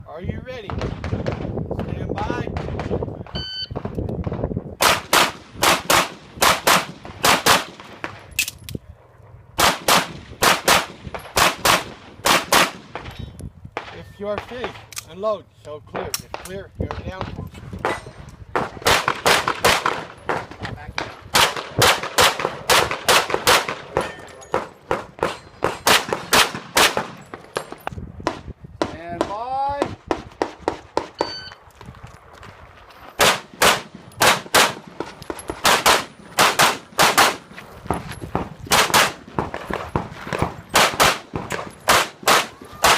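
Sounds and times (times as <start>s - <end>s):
handgun shots: 33.2s - 35.0s, 35.6s - 37.4s, 38.7s - 39.5s, 40.3s - 42.9s.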